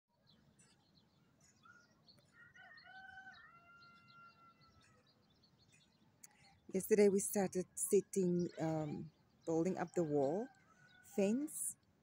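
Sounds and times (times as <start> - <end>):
small birds chirping: 0.2 - 12.0
rooster crowing: 2.4 - 4.8.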